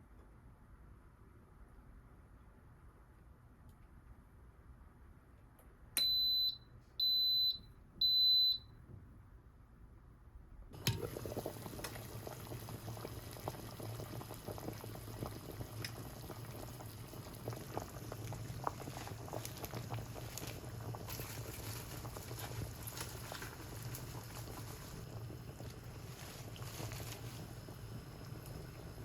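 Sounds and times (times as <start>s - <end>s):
appliance control panel beeps: 6.0s - 8.8s
food sizzling in a pot: 10.8s - 29.0s.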